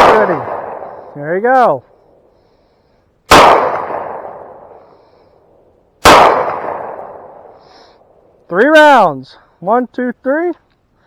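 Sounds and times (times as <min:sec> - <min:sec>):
pistol shots echoing: 0:00.0 - 0:01.2, 0:03.3 - 0:04.9, 0:06.0 - 0:07.6.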